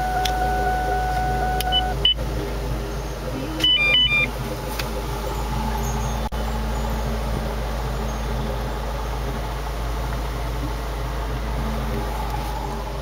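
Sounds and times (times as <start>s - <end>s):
radar detector beeps: 0.0s - 2.2s, 3.6s - 4.3s
car engine idling: 0.0s - 13.0s.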